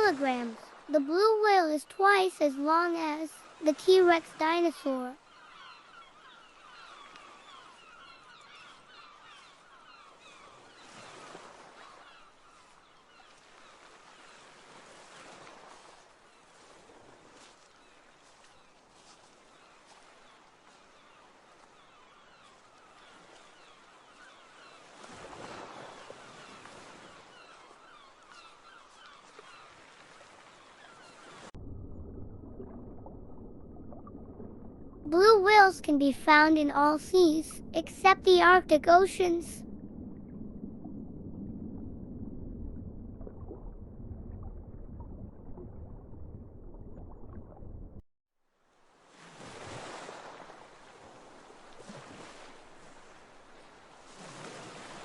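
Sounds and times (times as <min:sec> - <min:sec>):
low wash of sea water: 0:00.0 - 0:55.0
low muffled water rumble: 0:31.4 - 0:48.0.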